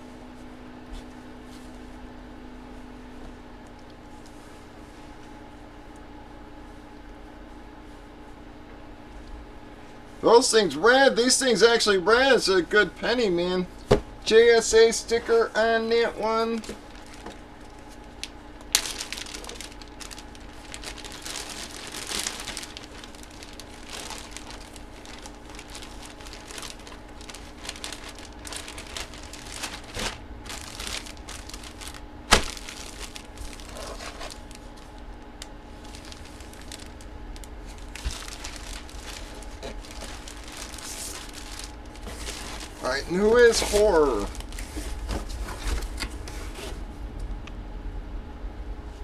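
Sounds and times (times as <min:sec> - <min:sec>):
plastic packaging crinkling: 0:15.6 - 0:46.0.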